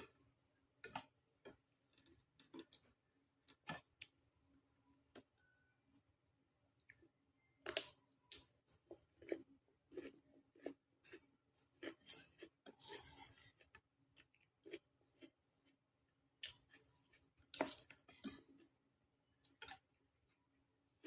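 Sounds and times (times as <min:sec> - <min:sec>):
chewing: 0:09.2 - 0:15.8.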